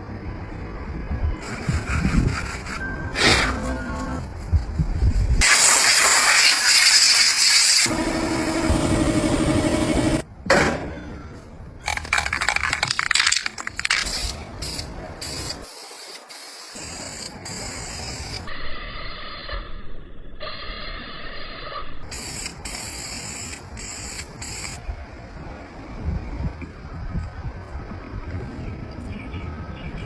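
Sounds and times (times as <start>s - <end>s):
paint spraying hiss: 1.4s - 2.8s, 5.4s - 8.0s, 14.0s - 18.5s, 22.1s - 24.8s.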